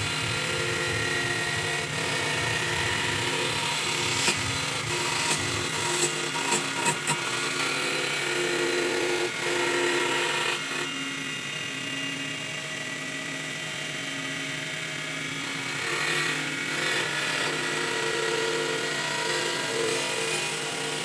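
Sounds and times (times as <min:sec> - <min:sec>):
tool cutting turning wood: 0:00.0 - 0:10.1, 0:17.3 - 0:21.0
lathe motor whine: 0:00.0 - 0:21.0.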